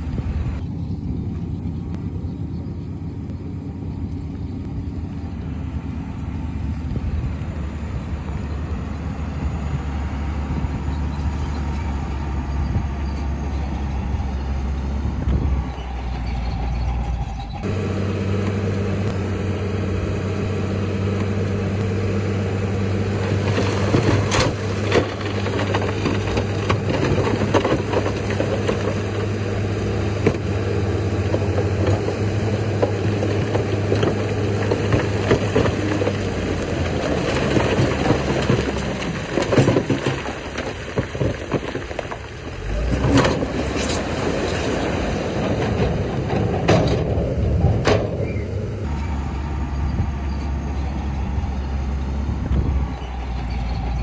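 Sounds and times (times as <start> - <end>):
heavy diesel engine running: 0.0 - 54.0
metal and stone clanking: 23.2 - 48.9.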